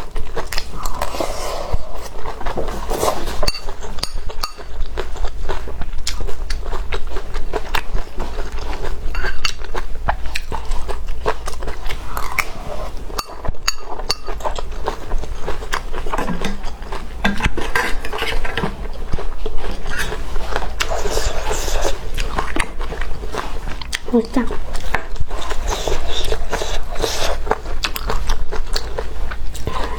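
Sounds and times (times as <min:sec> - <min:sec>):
biting and chewing: 0:00.0 - 0:29.9
utensil scraping a bowl: 0:17.4 - 0:18.8.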